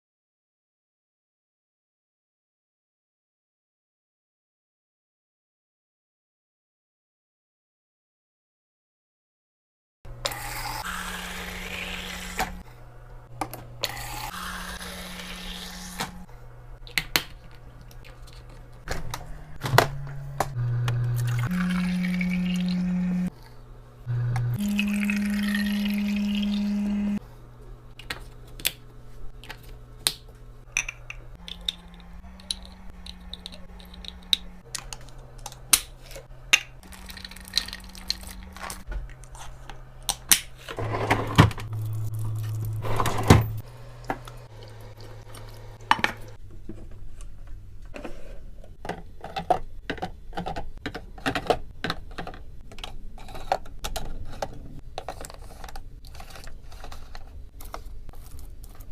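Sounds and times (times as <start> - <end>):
plastic and glass containers clacking: 48.8 - 57.3.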